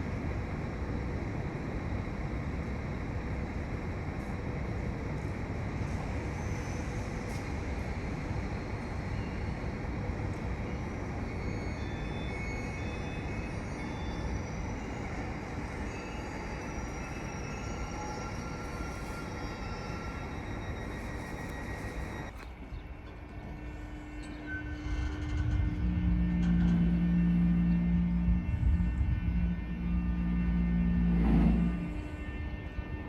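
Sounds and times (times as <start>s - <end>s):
train wheels rumbling on rail: 0.0s - 33.0s
high wheel squeals: 6.0s - 7.6s, 10.6s - 22.4s, 23.6s - 28.6s.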